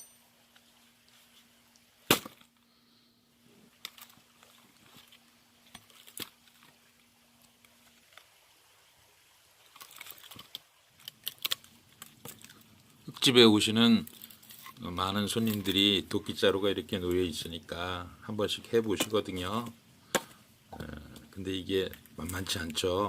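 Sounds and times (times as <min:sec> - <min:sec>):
axe striking log: 0:02.1 - 0:02.4, 0:20.1 - 0:20.4.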